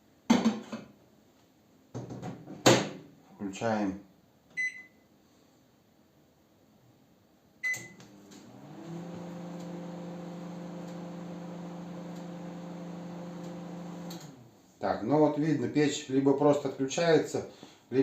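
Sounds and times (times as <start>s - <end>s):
microwave key beep: 4.6s - 5.0s, 7.6s - 8.0s
microwave running hum: 7.6s - 14.5s.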